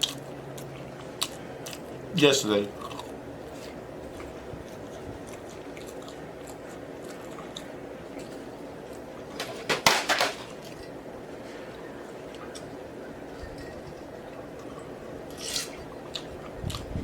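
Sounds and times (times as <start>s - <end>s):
close-miked eating sounds: 0.0s - 9.5s, 10.6s - 17.0s
low room hum: 0.0s - 17.0s.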